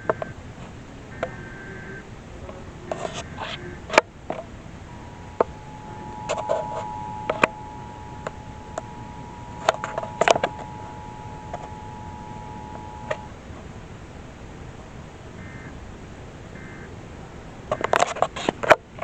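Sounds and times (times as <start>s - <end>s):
two-tone alarm signal: 1.1s - 2.0s, 4.9s - 13.4s, 15.4s - 15.7s, 16.6s - 16.9s.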